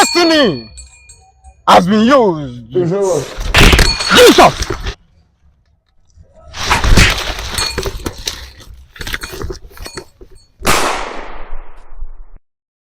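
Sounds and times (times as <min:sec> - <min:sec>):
clatter of knocks and clinks: 0:07.0 - 0:10.6.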